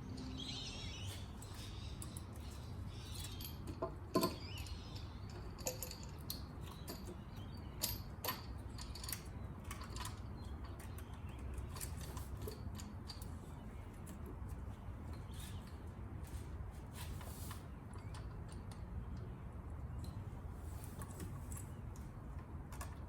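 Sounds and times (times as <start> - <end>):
metal tools clinking: 0.1 - 13.4.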